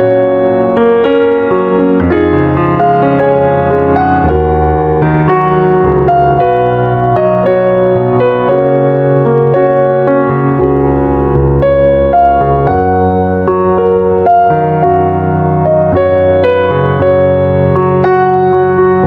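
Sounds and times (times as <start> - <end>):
slow piano music: 0.0 - 19.0.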